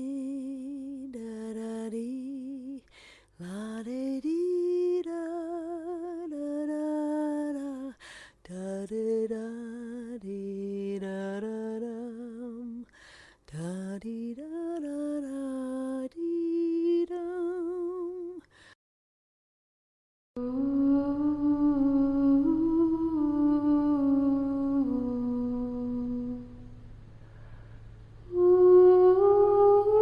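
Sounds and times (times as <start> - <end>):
woman humming: 20.4 - 26.8, 28.3 - 30.0.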